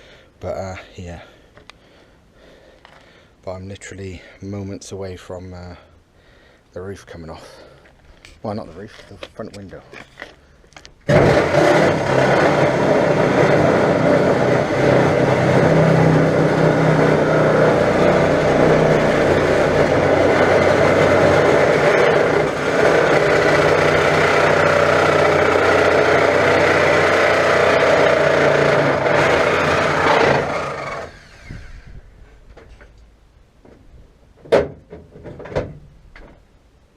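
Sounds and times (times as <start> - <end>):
reciprocating saw cutting steel: 11.1 - 31.9.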